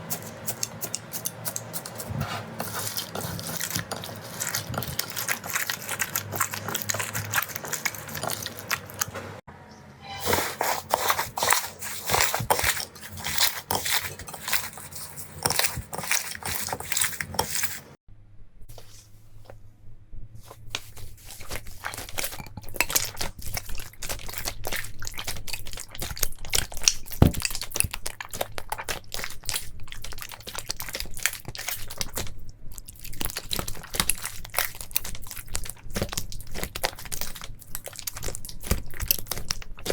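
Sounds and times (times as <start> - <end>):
slime crackling and popping: 2.7 - 9.2.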